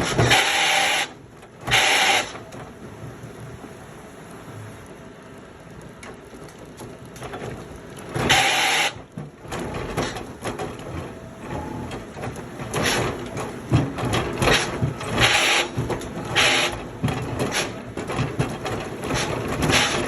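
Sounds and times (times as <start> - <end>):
woodworking machinery running: 6.6 - 20.0.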